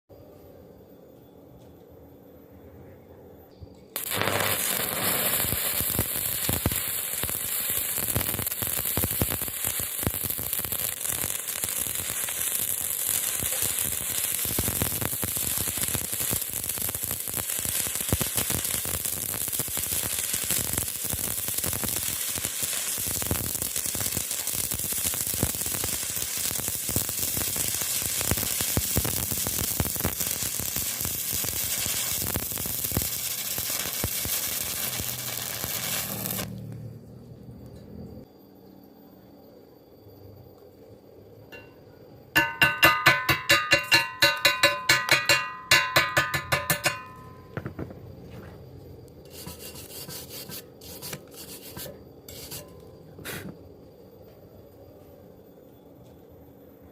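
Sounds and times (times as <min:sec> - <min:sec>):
welding arc sizzling and crackling: 0:04.0 - 0:36.8, 0:42.4 - 0:47.8, 0:49.2 - 0:53.5.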